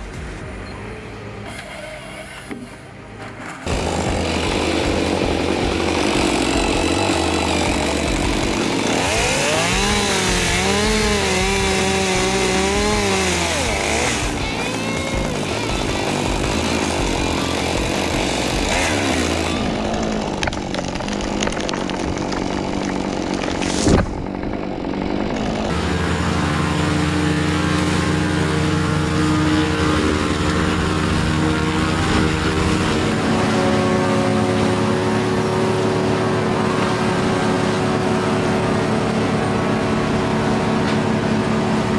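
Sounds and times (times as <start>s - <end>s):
engine humming steadily: 0.0s - 41.9s
saw-like motor: 3.6s - 41.9s.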